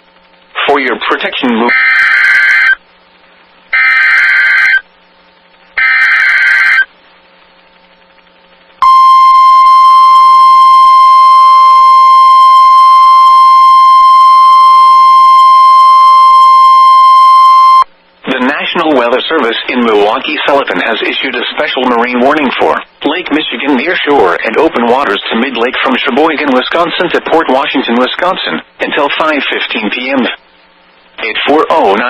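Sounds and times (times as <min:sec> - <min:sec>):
steady warning alarm tone: 0:01.7 - 0:02.8, 0:03.7 - 0:04.9, 0:05.8 - 0:06.9, 0:08.8 - 0:17.9
screeching digital data bursts: 0:03.8 - 0:04.9, 0:05.8 - 0:06.9.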